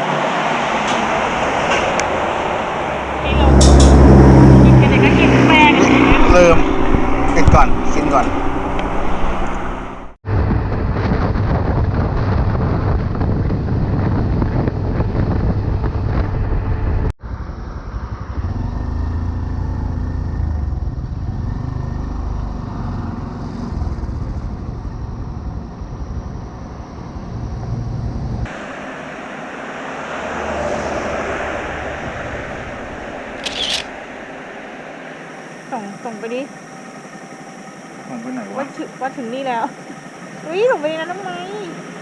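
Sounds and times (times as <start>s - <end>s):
motorcycle engine drone: 0.0s - 42.0s
wind rumble on microphone: 1.6s - 28.5s.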